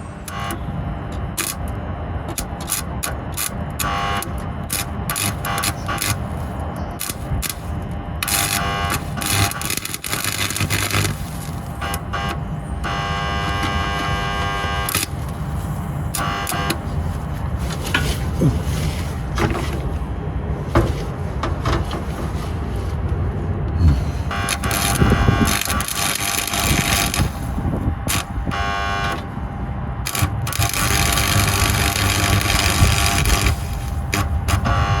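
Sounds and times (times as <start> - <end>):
sharp cracks and clicks: 1.2 - 14.1, 14.8 - 15.4, 24.3 - 29.3, 30.1 - 35.0
metalworking power tool buzzing: 2.4 - 17.1, 24.2 - 29.3, 30.1 - 35.0
low rumble: 16.8 - 25.8.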